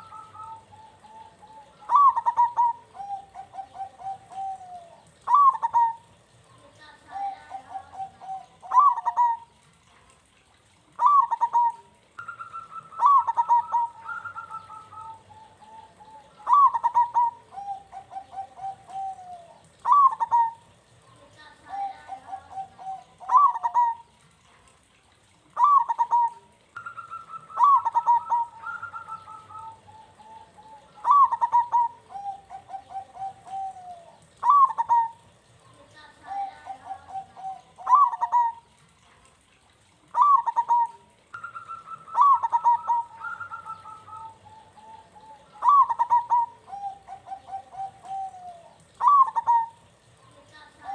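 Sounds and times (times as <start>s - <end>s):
dove cooing song: 0.0s - 50.9s.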